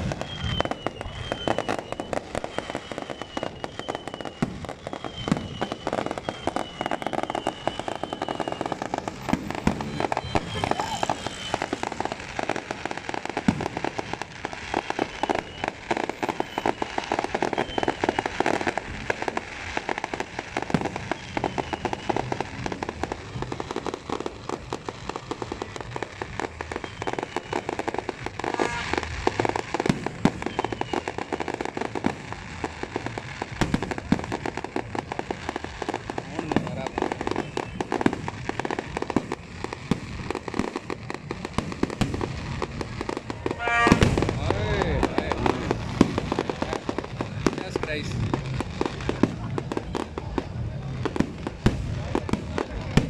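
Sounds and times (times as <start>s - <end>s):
fireworks crackling: 0.0s - 53.0s
fireworks falling whistles: 0.0s - 53.0s.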